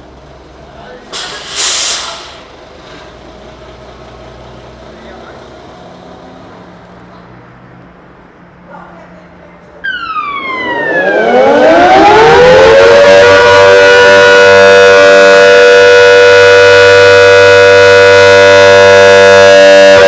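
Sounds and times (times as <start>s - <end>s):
siren wailing: 9.8s - 20.0s.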